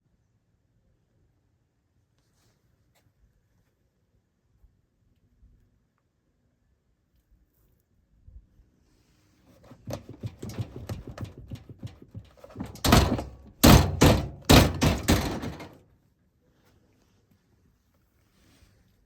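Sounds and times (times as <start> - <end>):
washing machine knocking and banging: 9.6 - 15.8.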